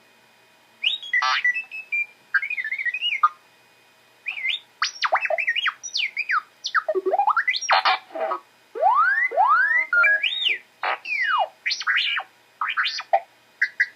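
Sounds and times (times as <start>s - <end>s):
robot beeps and warbling whistles: 0.8s - 3.4s, 4.3s - 13.9s.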